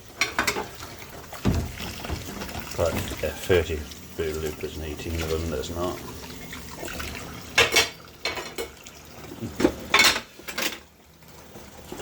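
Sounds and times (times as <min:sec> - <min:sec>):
dishes and cutlery clattering: 0:00.2 - 0:00.8, 0:07.5 - 0:08.8, 0:09.6 - 0:10.9
sharp knocks: 0:01.4 - 0:02.4.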